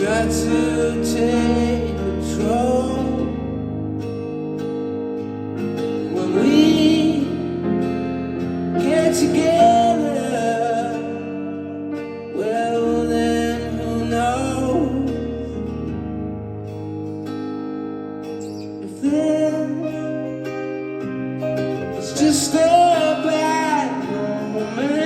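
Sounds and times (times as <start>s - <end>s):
person singing: 0.0s - 3.6s, 6.0s - 15.8s, 18.8s - 25.0s
guitar: 0.0s - 25.0s.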